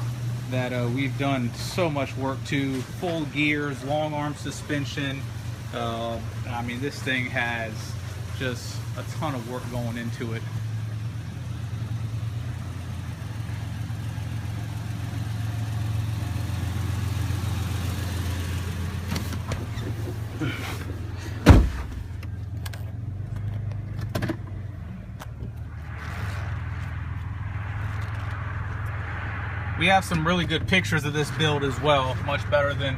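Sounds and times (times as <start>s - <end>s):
car engine running: 0.0s - 32.9s
loud thump: 21.4s - 22.1s.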